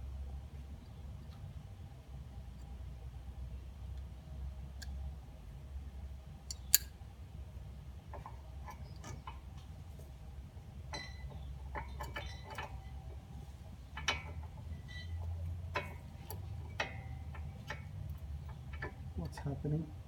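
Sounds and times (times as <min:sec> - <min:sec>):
steady low hum: 0:00.0 - 0:20.0
light metallic clicks: 0:06.4 - 0:07.0.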